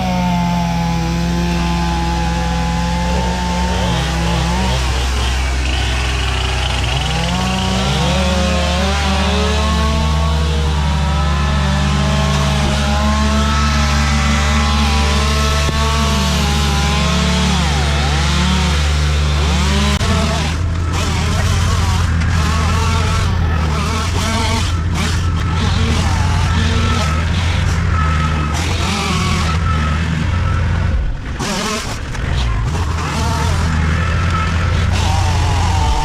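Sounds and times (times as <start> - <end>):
chainsaw cutting trees: 0.0 - 36.0.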